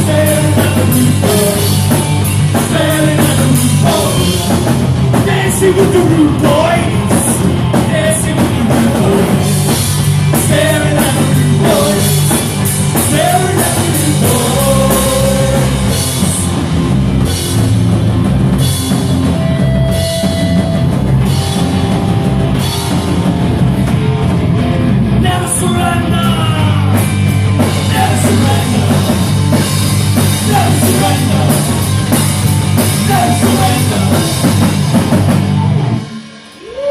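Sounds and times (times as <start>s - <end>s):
punk rock band playing: 0.0s - 36.9s
person singing: 2.5s - 9.7s, 10.4s - 16.5s, 30.4s - 31.8s.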